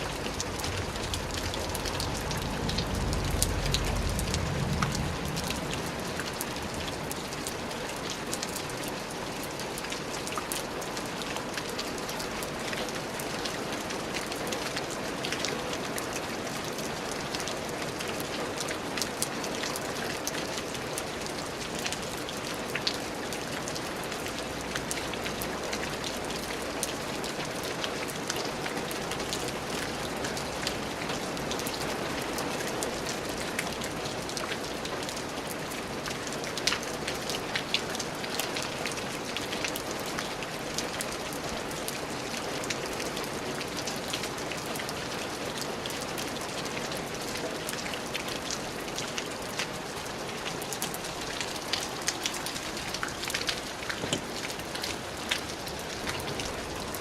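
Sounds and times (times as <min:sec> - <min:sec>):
raindrops ticking sharply: 0:00.0 - 0:08.6
rain pattering: 0:00.0 - 0:57.0.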